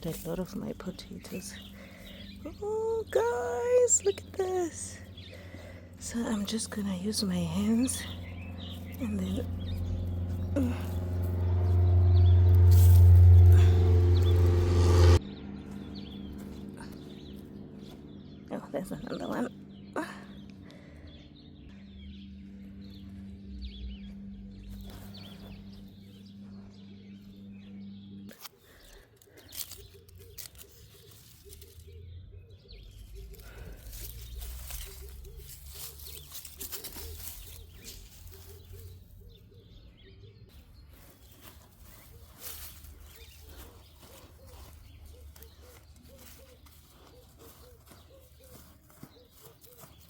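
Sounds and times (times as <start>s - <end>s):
hands digging through soil: 0.0s - 15.2s, 28.3s - 32.1s, 32.7s - 39.4s, 40.5s - 50.0s.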